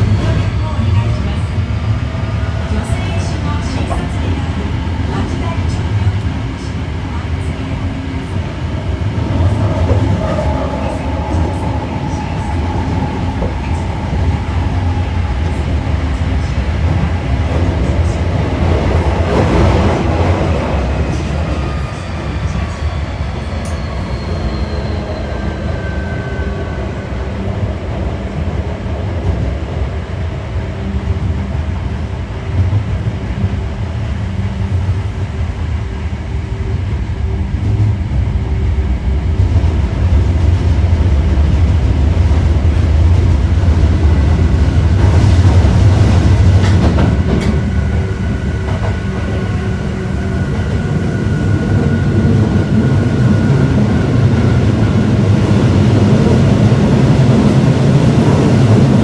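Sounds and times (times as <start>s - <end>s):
subway train rumble: 0.0s - 59.0s
rail clicks: 2.6s - 8.4s, 9.2s - 22.6s, 41.2s - 59.0s.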